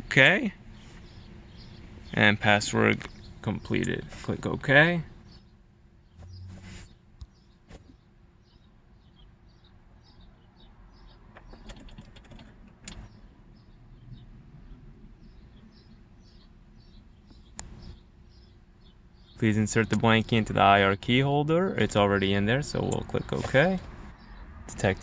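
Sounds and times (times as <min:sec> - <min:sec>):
low steady hum: 0:00.0 - 0:09.5
small bird chirping: 0:00.7 - 0:04.1, 0:05.2 - 0:20.5, 0:22.7 - 0:25.0
sharp clicks: 0:11.4 - 0:13.1.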